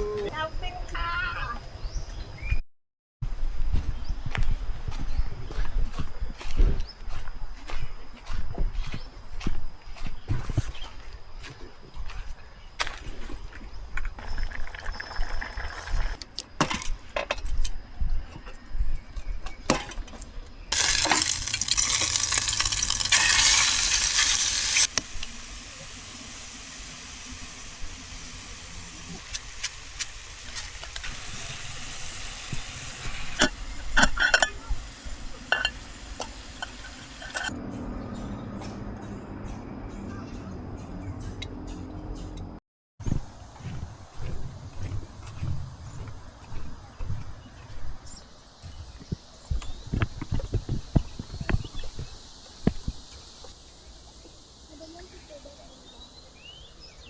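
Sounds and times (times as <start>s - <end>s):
pots and pans clinking: 20.7s - 26.4s, 32.2s - 37.6s
steady hiss: 20.7s - 37.5s.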